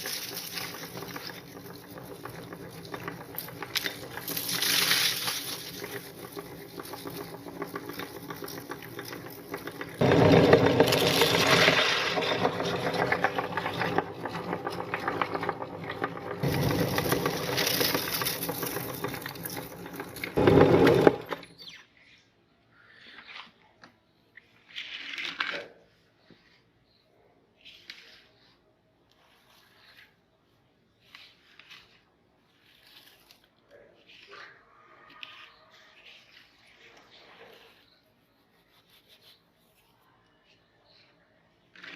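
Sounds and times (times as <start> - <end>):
electric meat grinder motor: 0.3 - 21.4.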